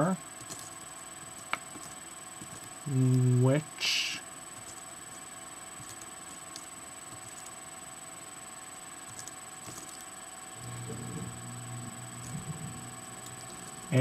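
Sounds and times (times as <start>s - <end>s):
electrical background hum: 0.0s - 14.0s
low pitched hum: 0.0s - 14.0s
keystrokes on computer keyboard: 0.4s - 3.2s, 4.5s - 5.2s, 5.8s - 7.6s, 9.0s - 10.1s, 12.1s - 13.9s.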